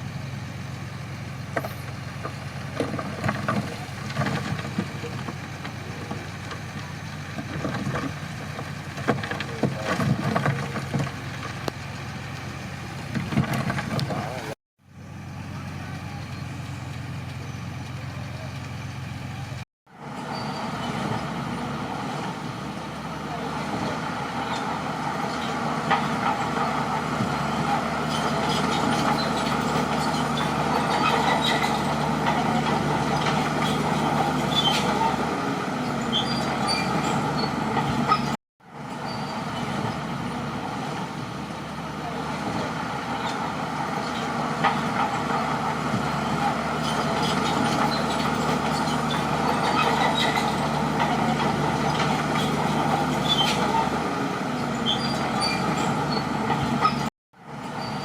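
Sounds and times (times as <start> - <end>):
bulldozer diesel engine running: 0.0 - 58.0
light metallic clicks and squeaks: 28.0 - 35.1, 36.0 - 38.4, 46.8 - 53.8, 54.6 - 57.1.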